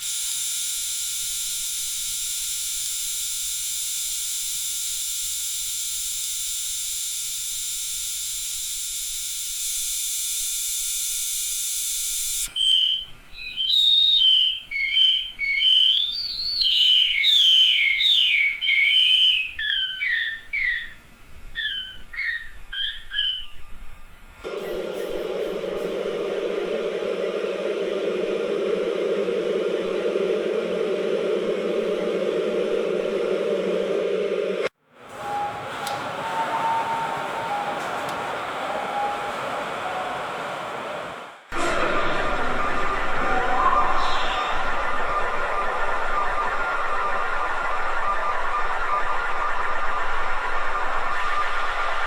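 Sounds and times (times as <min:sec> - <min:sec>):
whistled chirps: 0:12.5 - 0:21.0, 0:21.6 - 0:23.8, 0:35.1 - 0:41.0, 0:43.3 - 0:44.9
high-pitched drone: 0:24.5 - 0:50.2.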